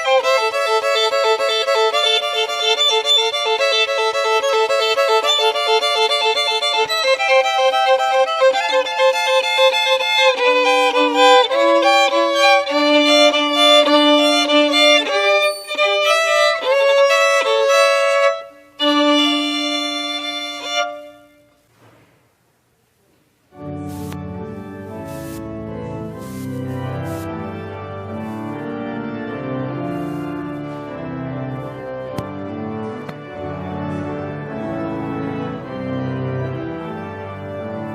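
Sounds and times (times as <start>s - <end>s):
violin slow melody: 0.0s - 21.6s, 23.6s - 37.9s
music with low sustained notes: 23.5s - 37.9s.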